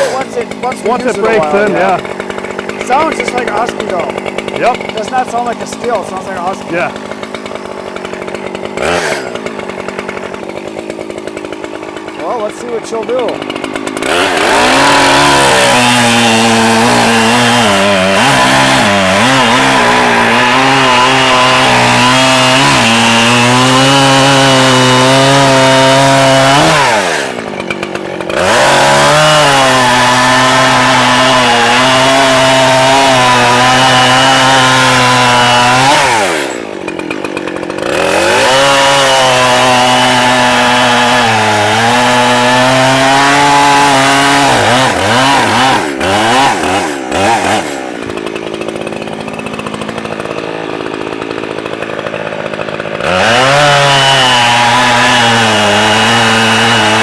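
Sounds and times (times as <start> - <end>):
chainsaw cutting wood: 0.0 - 57.0.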